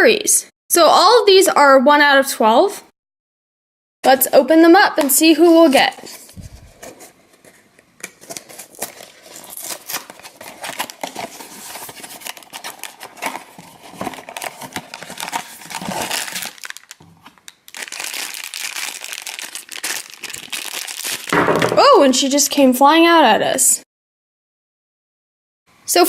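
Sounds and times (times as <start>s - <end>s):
packaging torn and crinkled: 8.0s - 21.4s.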